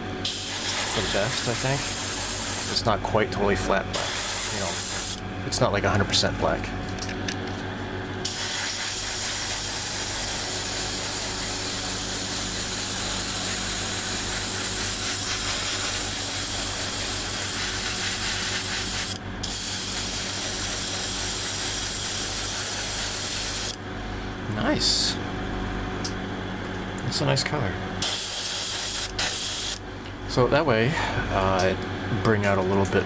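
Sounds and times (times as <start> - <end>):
airbrush spraying hiss: 0.2 - 2.8, 4.0 - 5.2, 8.2 - 23.8, 28.0 - 29.8.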